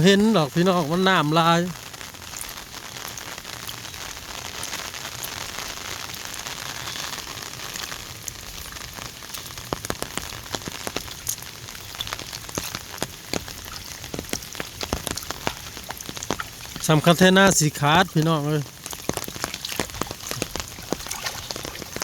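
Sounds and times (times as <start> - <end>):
heavy rain hissing: 0.0 - 22.0
raindrops tapping close by: 0.0 - 22.0.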